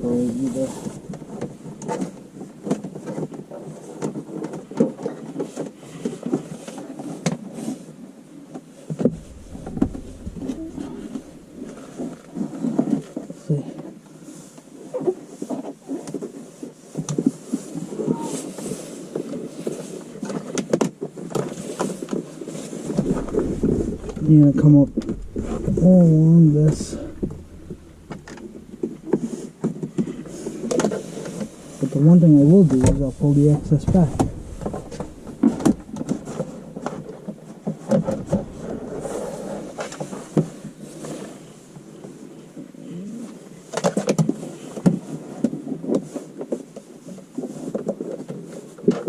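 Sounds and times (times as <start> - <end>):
rustling and scraping: 30.1 - 36.8.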